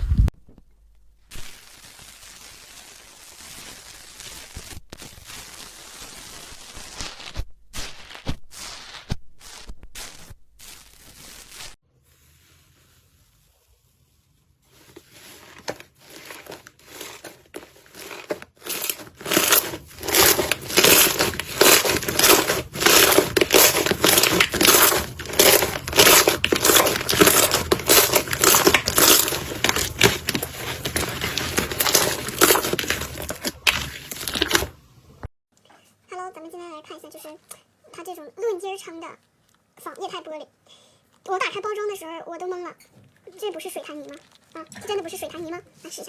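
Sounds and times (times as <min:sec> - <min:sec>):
slime crackling and popping: 0:16.1 - 0:34.8.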